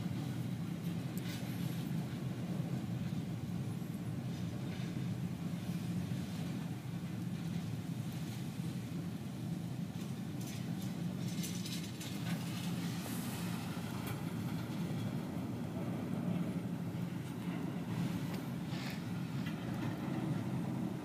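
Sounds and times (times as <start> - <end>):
train wheels rumbling on rail: 10.0 - 21.0
train clatter and squeaks: 10.4 - 12.8.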